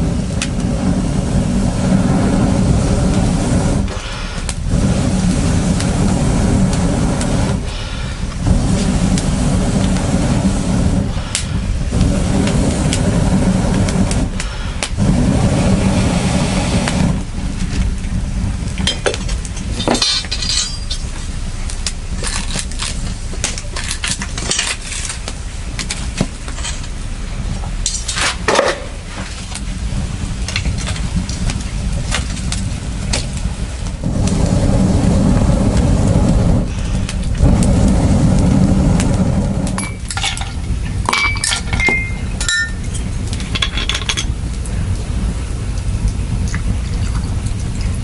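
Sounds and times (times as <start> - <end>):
steady low rumble: 0.0 - 48.0
scattered clinks and knocks: 39.8 - 44.3.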